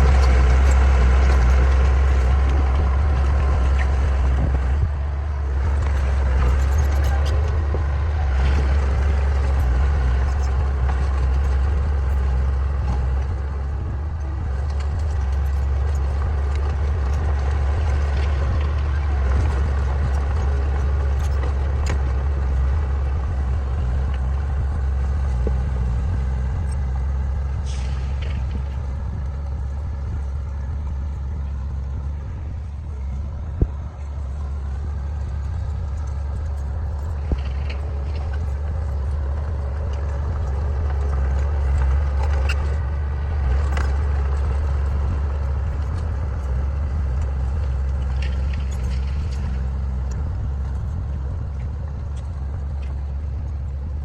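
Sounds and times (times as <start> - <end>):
diesel engines droning: 0.0 - 54.0.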